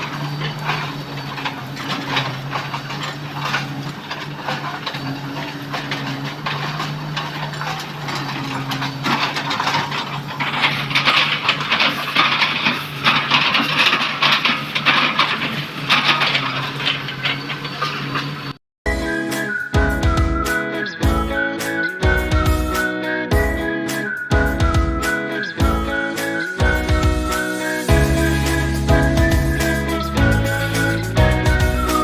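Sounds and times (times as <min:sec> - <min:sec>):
wood crackling and splintering: 0:00.0 - 0:18.6, 0:24.0 - 0:32.0
excavator diesel engine: 0:00.0 - 0:32.0.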